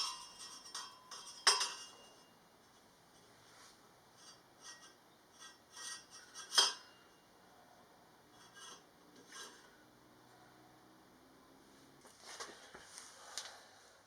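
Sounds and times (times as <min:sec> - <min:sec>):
metal scraping: 0:04.2 - 0:07.0, 0:08.3 - 0:09.8.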